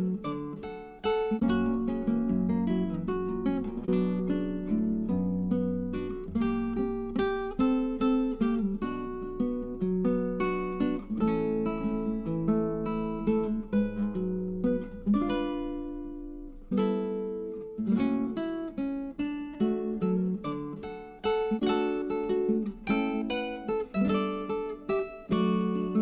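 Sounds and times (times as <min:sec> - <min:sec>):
acoustic guitar strumming: 0:00.0 - 0:26.0.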